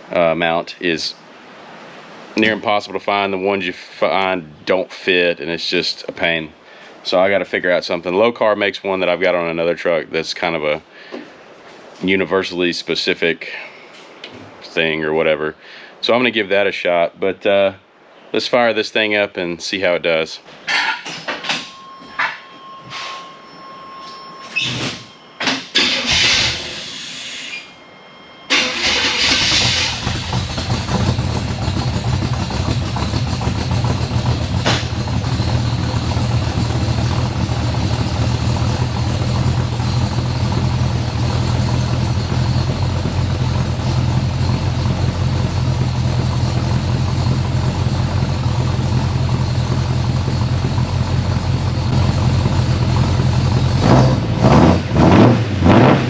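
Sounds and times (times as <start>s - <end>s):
car engine starting and idling: 25.4s - 27.6s, 28.5s - 56.0s.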